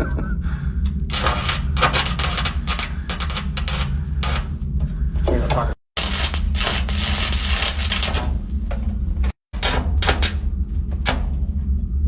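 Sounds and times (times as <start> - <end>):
low machinery drone: 0.0 - 12.0
metallic knocks and clanks: 1.1 - 4.6, 5.5 - 11.6.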